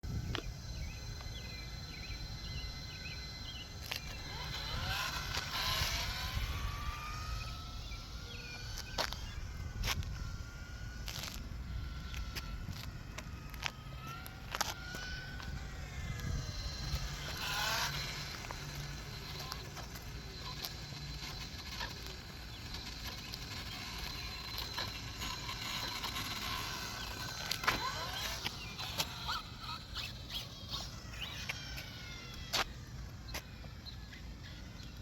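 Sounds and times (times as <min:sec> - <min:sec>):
toy car motor whine: 0:00.1 - 0:35.0
scattered clicks: 0:12.1 - 0:33.5.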